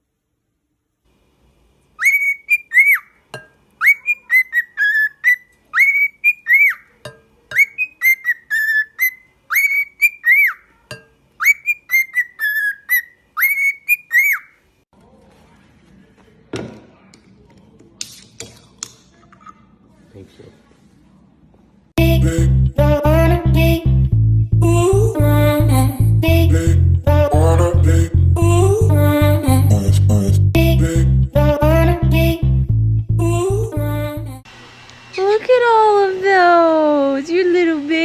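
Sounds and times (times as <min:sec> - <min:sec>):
parrot whistling a tune: 0:02.0 - 0:03.2, 0:03.8 - 0:06.9, 0:07.6 - 0:10.7, 0:11.4 - 0:14.6.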